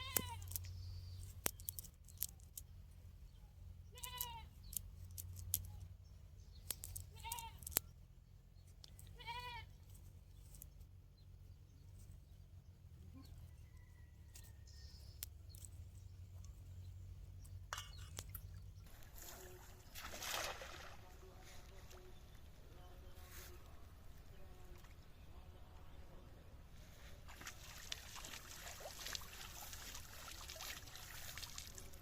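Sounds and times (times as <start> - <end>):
bleat-like animal calls: 0.0 - 0.6, 3.9 - 4.5, 7.1 - 7.7, 9.1 - 9.7.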